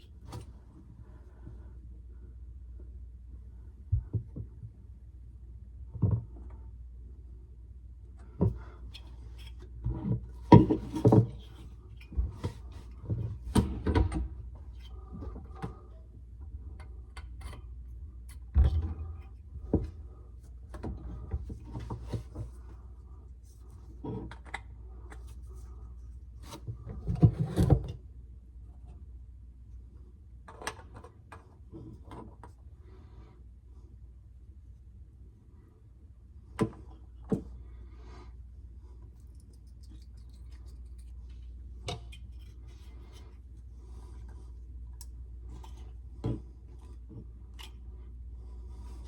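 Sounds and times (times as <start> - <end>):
steady low hum: 31.6 - 49.0.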